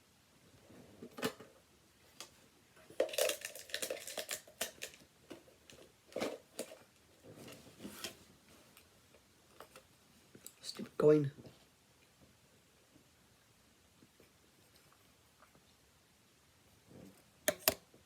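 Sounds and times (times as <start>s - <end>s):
rustling: 0.6s - 10.4s.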